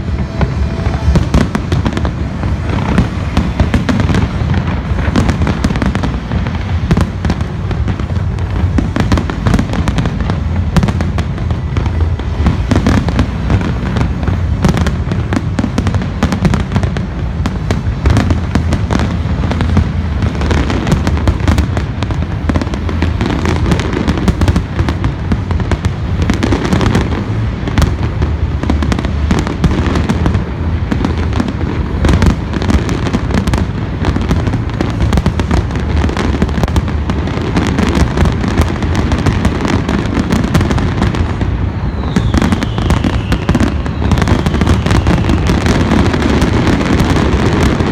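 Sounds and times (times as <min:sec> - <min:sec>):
low rumble: 0:00.0 - 0:16.2
fireworks bangs: 0:00.0 - 0:47.9.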